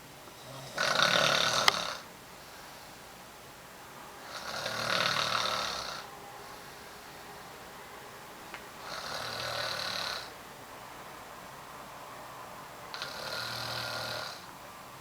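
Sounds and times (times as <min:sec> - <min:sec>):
woman snoring: 0:00.4 - 0:02.1, 0:04.2 - 0:07.2, 0:08.8 - 0:10.3, 0:12.9 - 0:14.5.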